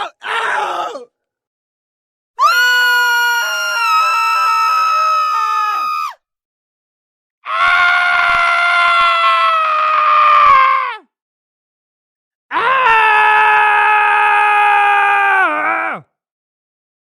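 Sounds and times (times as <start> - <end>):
person screaming: 0.0 - 1.1, 2.4 - 6.2, 12.5 - 16.1.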